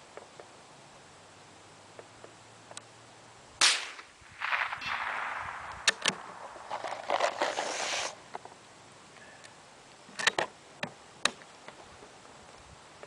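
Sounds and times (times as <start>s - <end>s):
rifle shot: 3.6s - 6.7s.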